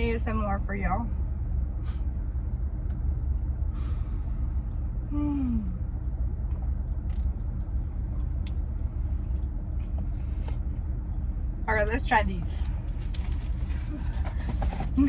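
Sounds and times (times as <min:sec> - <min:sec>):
car interior rumble: 0:00.0 - 0:15.0
breathing: 0:03.7 - 0:04.5
person humming mm: 0:05.1 - 0:05.8.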